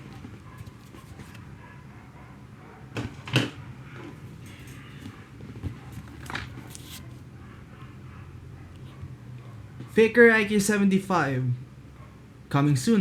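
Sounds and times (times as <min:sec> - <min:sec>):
knocks and handling sounds: 0:03.0 - 0:07.1.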